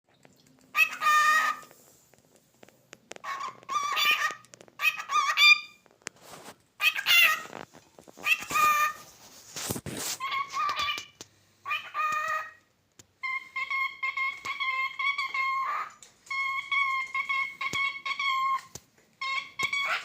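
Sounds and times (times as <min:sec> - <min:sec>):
cockatiel warbling calls: 0:00.7 - 0:01.7, 0:03.2 - 0:05.8, 0:06.8 - 0:07.6, 0:08.2 - 0:09.0, 0:10.2 - 0:20.0.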